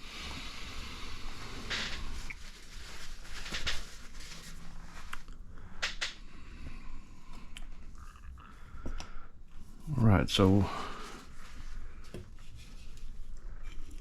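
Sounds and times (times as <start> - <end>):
plastic parts rustling and scraping: 1.4 - 6.0, 11.2 - 14.0.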